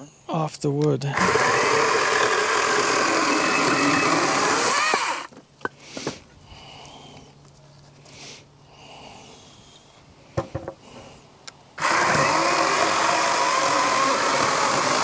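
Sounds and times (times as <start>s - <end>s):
electric chainsaw cutting wood: 1.1s - 5.3s, 11.8s - 15.0s.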